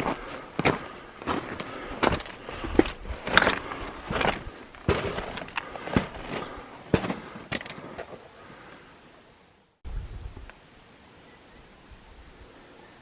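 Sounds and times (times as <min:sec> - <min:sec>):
footsteps on a trail: 0:00.0 - 0:08.7.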